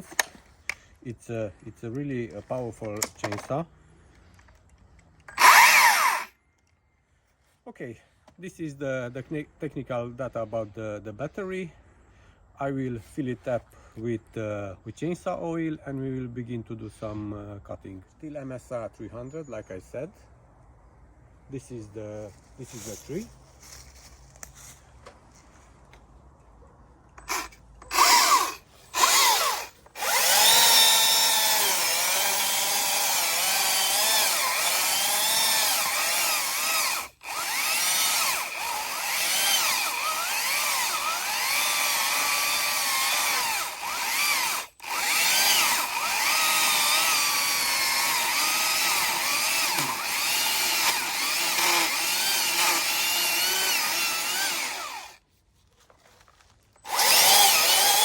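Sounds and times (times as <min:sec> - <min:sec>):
electric chainsaw whining: 0:05.3 - 0:06.4, 0:27.2 - 0:55.2, 0:56.8 - 0:58.0.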